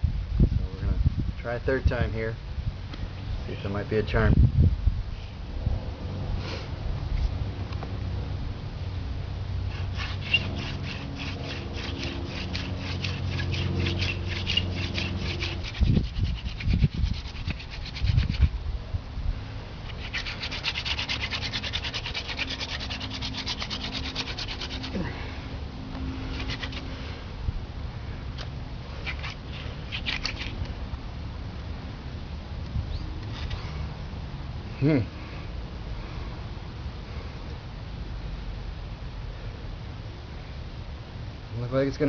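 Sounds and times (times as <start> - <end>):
spindle grinding in fireboard: 9.7 - 18.5, 19.9 - 25.0, 26.3 - 26.9, 29.0 - 30.6.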